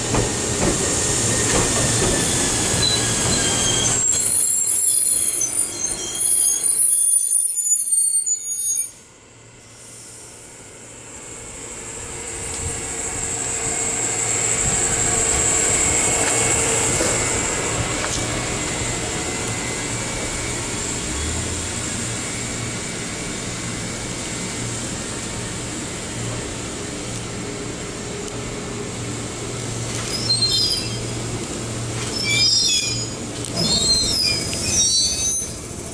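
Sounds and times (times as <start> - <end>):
electric train rumble and hum: 0.0 - 35.9
train wheels squealing: 0.9 - 9.0, 30.0 - 31.2, 32.0 - 35.9.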